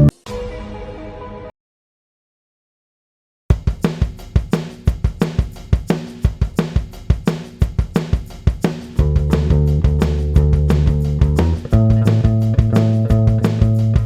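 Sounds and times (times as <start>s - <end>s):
drum kit beat: 3.5s - 14.0s
sustained bass: 9.0s - 14.0s.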